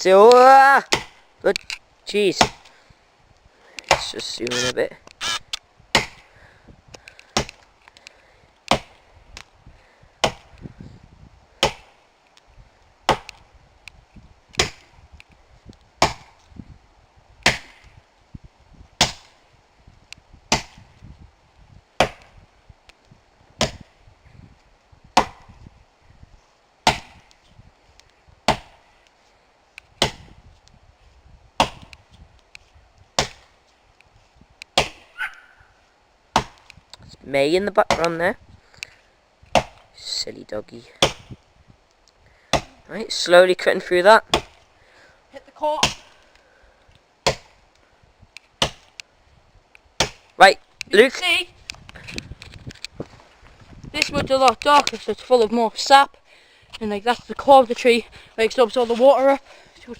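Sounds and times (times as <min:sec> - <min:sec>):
axe chopping into wood: 0:00.9 - 0:01.2, 0:02.4 - 0:02.7, 0:03.9 - 0:04.1, 0:05.2 - 0:06.3, 0:07.3 - 0:07.6, 0:08.7 - 0:09.0, 0:10.2 - 0:10.5, 0:11.6 - 0:12.0, 0:13.0 - 0:13.4, 0:14.6 - 0:14.9, 0:16.0 - 0:16.4, 0:17.4 - 0:18.0, 0:19.0 - 0:19.4, 0:20.5 - 0:20.9, 0:22.0 - 0:22.4, 0:23.6 - 0:23.9, 0:25.2 - 0:25.6, 0:26.8 - 0:27.3, 0:28.4 - 0:28.8, 0:29.9 - 0:30.4, 0:31.6 - 0:32.0, 0:33.2 - 0:33.5, 0:34.7 - 0:35.3, 0:36.3 - 0:36.7, 0:37.8 - 0:38.2, 0:39.5 - 0:39.9, 0:41.0 - 0:41.4, 0:42.5 - 0:42.8, 0:44.3 - 0:44.6, 0:45.8 - 0:46.2, 0:47.2 - 0:47.6, 0:48.5 - 0:49.0, 0:50.0 - 0:50.3.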